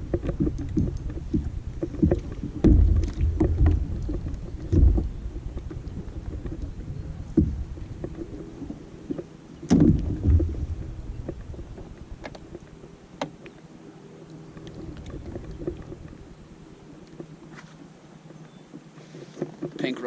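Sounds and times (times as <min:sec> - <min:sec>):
thumps and knocks on boat: 0:00.0 - 0:13.4, 0:14.7 - 0:16.3
faint steady hum: 0:00.0 - 0:20.0.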